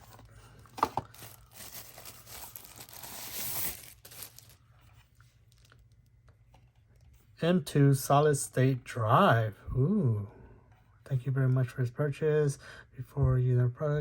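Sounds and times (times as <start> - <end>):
packaging crinkling and rustling: 0.0 - 6.2.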